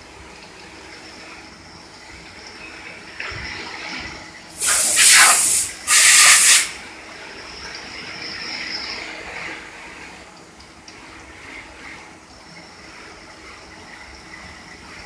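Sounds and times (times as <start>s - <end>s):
machine whining and humming: 0.0s - 15.0s
compressed air hissing from blow gun: 4.5s - 6.8s.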